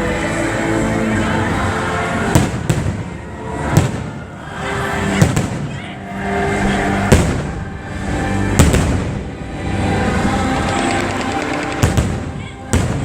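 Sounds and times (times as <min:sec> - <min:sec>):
music: 0:00.0 - 0:13.0
fireworks booming: 0:07.1 - 0:07.6, 0:08.6 - 0:09.3, 0:11.8 - 0:13.0.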